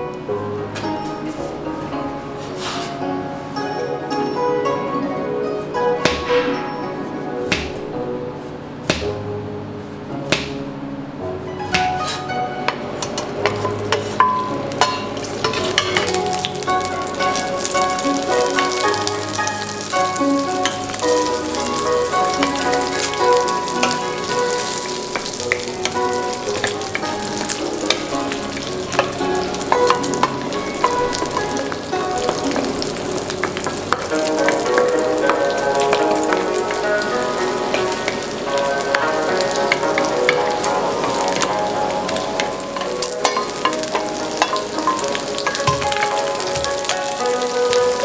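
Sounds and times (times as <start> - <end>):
music playing: 0.0 - 48.0
spatula stirring: 11.7 - 47.6
food sizzling in a frying pan: 13.0 - 48.0.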